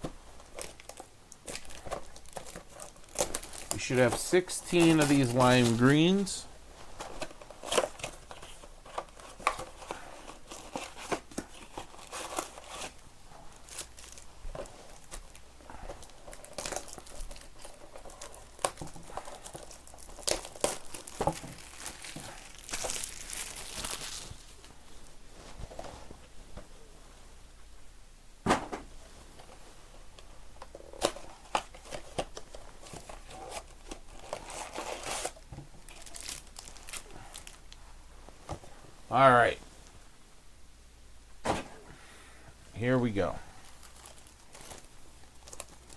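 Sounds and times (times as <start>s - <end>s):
card wrappers crinkling: 0.4s - 6.4s, 7.0s - 24.7s, 30.7s - 37.8s, 43.1s - 45.9s.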